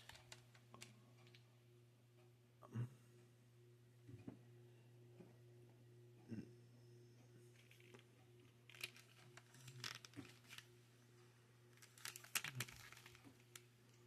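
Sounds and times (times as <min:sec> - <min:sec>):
faint handling clicks and rustles: 0:00.0 - 0:01.5, 0:07.5 - 0:10.7, 0:11.7 - 0:14.0
low steady hum: 0:00.0 - 0:14.0.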